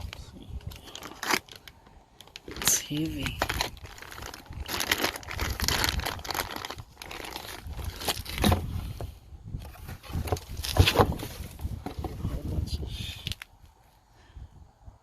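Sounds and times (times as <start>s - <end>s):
packaging crinkling and rustling: 0.0s - 9.0s, 9.6s - 12.1s.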